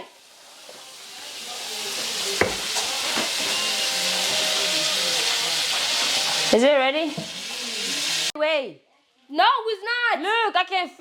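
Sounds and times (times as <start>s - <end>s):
butter sizzling in a frying pan: 0.0s - 8.4s.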